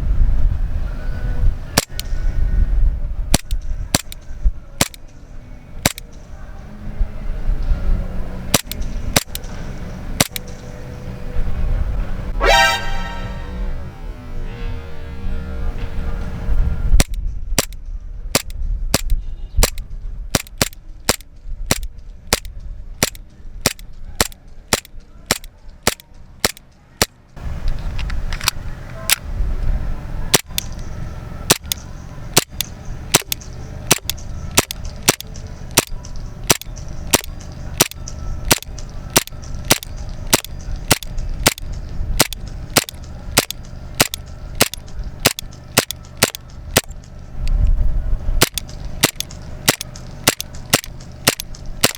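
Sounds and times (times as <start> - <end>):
airsoft pistol shots: 1.8 - 2.1, 3.3 - 4.2, 5.8 - 6.1, 8.5 - 9.4, 17.0 - 26.6, 30.3 - 30.7, 31.5 - 31.8, 32.4 - 46.9, 48.4 - 51.9.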